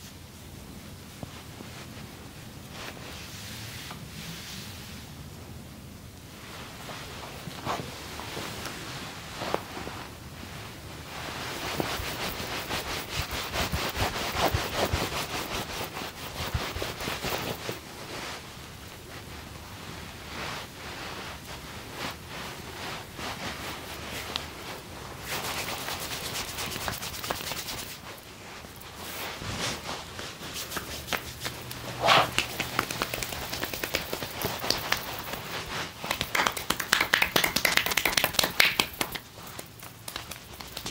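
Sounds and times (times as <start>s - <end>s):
hands rubbing skin: 11.2s - 18.4s, 19.8s - 40.9s.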